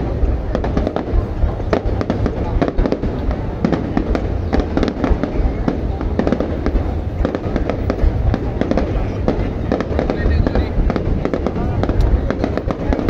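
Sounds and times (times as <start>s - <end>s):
fireworks cracks and pops: 0.0s - 13.0s.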